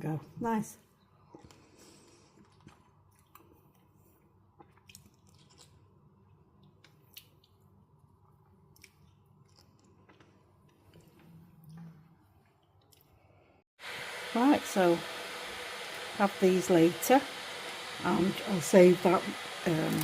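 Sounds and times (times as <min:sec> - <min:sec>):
person chewing: 0:01.3 - 0:13.3.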